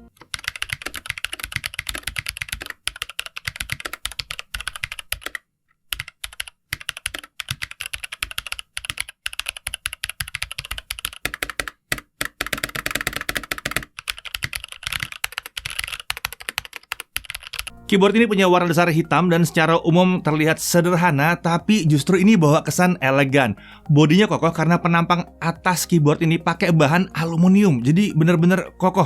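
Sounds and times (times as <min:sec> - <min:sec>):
mechanical keyboard typing: 0:00.1 - 0:17.7.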